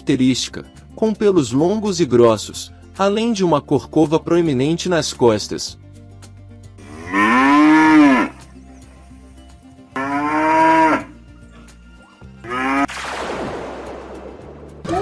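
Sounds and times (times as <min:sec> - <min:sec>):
cattle mooing: 0:06.8 - 0:08.4, 0:10.0 - 0:11.2, 0:12.4 - 0:12.9.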